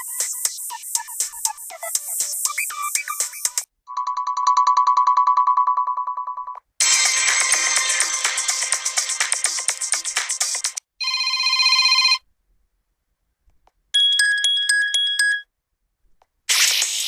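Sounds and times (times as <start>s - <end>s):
busy musical ringtone: 3.9s - 9.2s, 11.0s - 12.2s, 14.0s - 15.5s.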